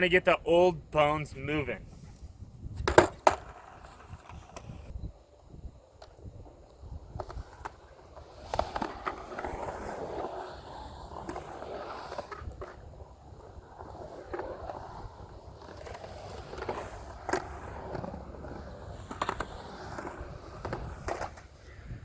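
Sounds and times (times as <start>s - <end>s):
skateboard wheels rolling on concrete: 0.0s - 22.0s
skateboard clacks: 2.8s - 4.9s.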